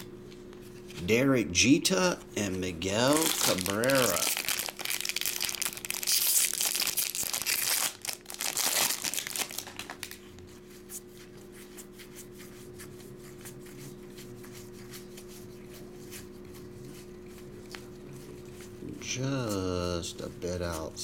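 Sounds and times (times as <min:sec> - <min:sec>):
faint steady hum: 0:00.0 - 0:21.0
cards being handled: 0:02.0 - 0:21.0
foil wrapper crinkling: 0:02.5 - 0:10.5.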